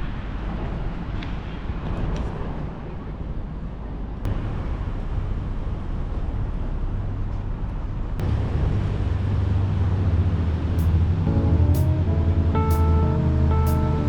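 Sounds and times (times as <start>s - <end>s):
passing vehicles engine rumble: 4.3s - 14.0s.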